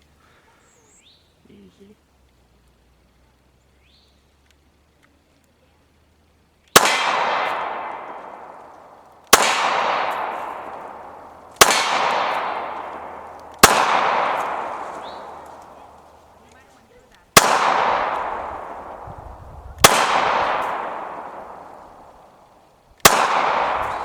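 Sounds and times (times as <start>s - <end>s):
pistol shots: 6.7s - 16.5s, 17.3s - 24.0s
gunshot echo: 6.8s - 16.5s, 17.4s - 24.0s.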